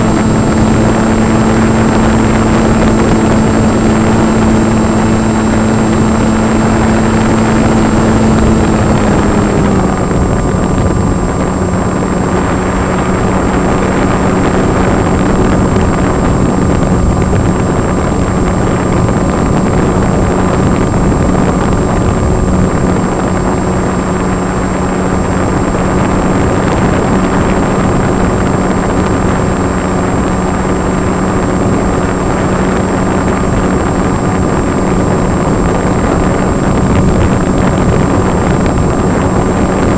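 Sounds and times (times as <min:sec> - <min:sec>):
electric motor and propeller drone: 0:00.0 - 0:39.9
wind rush: 0:00.0 - 0:39.9.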